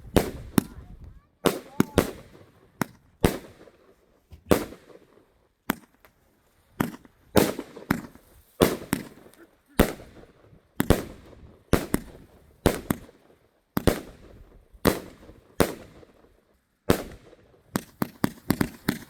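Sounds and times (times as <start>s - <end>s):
firework cake bangs: 0.0s - 3.6s, 6.8s - 13.1s, 17.8s - 19.0s.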